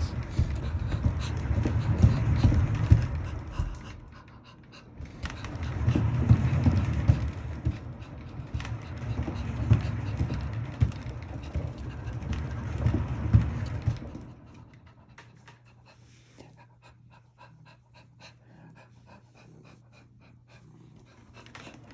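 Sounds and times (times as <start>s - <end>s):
cat exercise wheel rumbling: 0.0s - 21.9s.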